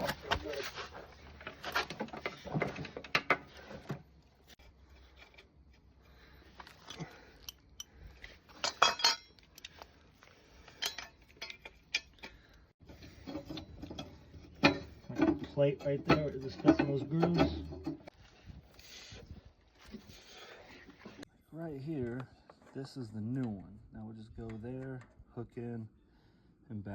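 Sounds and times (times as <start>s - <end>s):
metal tools clinking and clattering: 6.6s - 9.9s, 10.6s - 18.1s.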